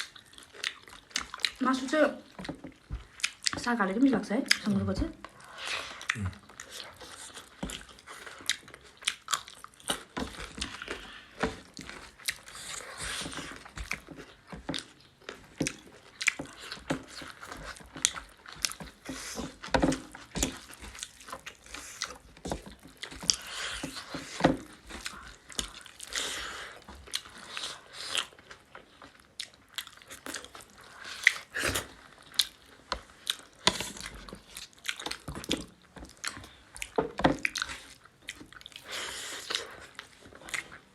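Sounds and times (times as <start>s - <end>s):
close-up chewing and crunching: 0.0s - 40.9s.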